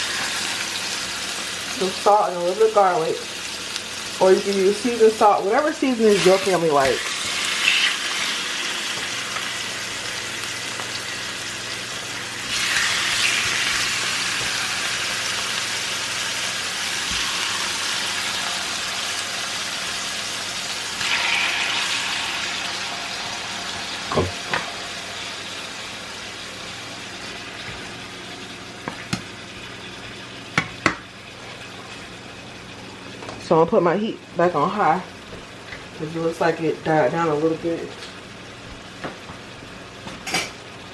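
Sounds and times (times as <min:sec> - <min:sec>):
chicken sizzling in hot oil: 0:00.0 - 0:30.9.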